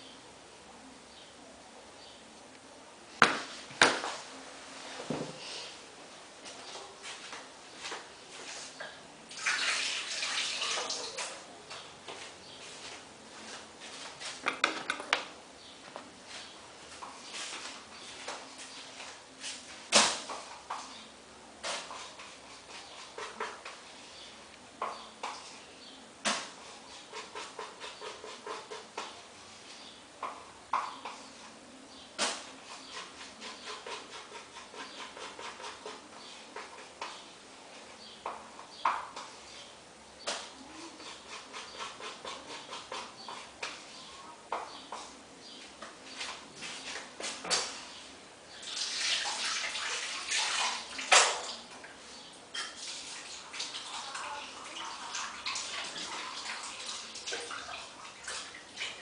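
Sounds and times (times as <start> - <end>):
light scraping and tapping: 11.7 - 15.3
spatula scraping plaster: 32.6 - 37.0, 40.7 - 44.0
water splashing: 48.7 - 51.7.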